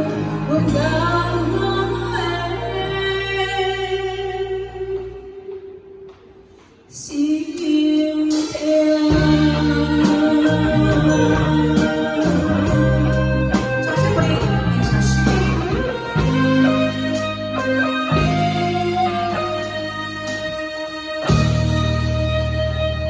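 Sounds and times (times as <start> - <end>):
backing music with bass and guitar: 0.0 - 5.3, 8.5 - 23.0
woman singing: 0.0 - 5.8, 6.9 - 17.2.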